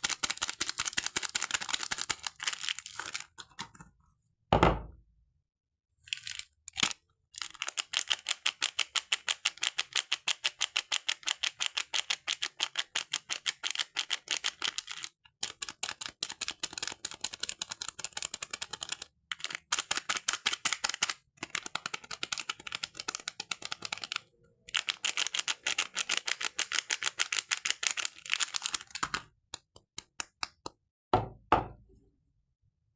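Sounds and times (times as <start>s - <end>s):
hands working soap clicking: 24.7s - 30.8s.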